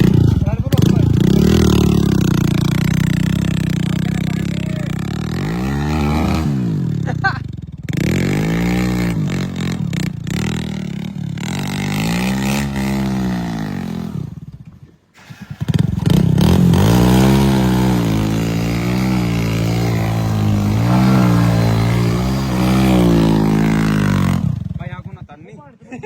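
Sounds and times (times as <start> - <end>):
heavy vehicle engine revving: 15.6 - 24.8.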